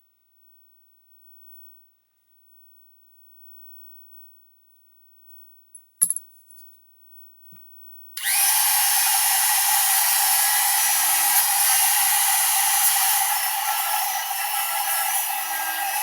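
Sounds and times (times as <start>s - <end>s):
rotary tool grinding plastic: 8.2s - 16.0s.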